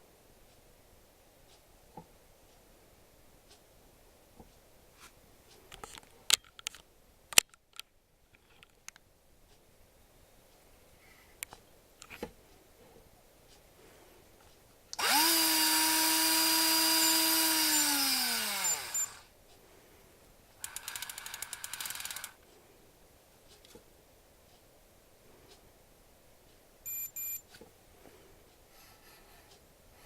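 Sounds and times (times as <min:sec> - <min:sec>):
fishing reel motor winding: 0:15.0 - 0:19.2, 0:20.6 - 0:22.4
reel rapid clicking: 0:20.6 - 0:22.4.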